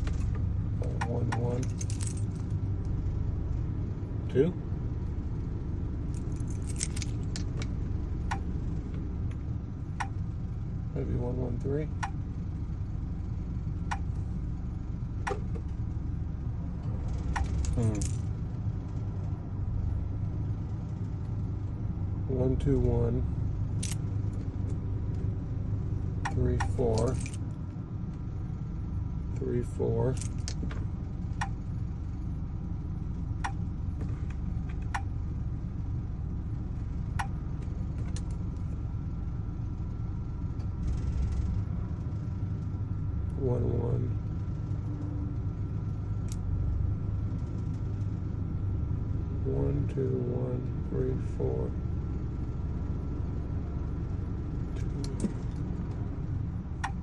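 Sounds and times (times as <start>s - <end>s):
low engine-like rumble: 0.0s - 57.0s
metal keys clicking: 6.2s - 7.6s
sharp metallic clicks: 8.3s - 8.5s, 26.2s - 27.4s, 37.2s - 37.4s.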